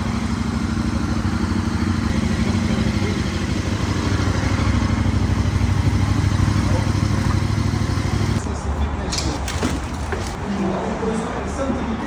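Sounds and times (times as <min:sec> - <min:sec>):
dirt bike engine idling: 0:00.0 - 0:08.6.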